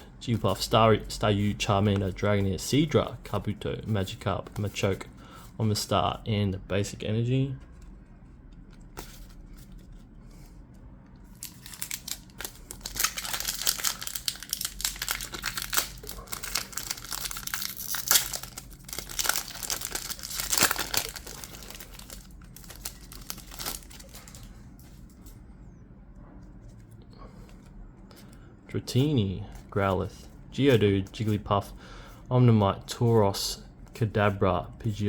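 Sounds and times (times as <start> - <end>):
foil wrapper crinkling and tearing: 11.3 - 24.5.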